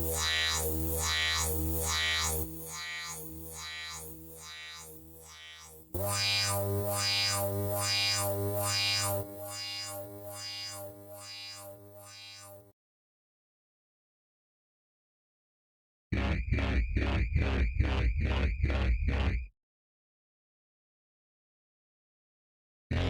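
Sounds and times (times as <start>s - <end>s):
filtered synth chord sweeping: 0.0s - 12.7s
deep sub-bass: 16.2s - 19.5s.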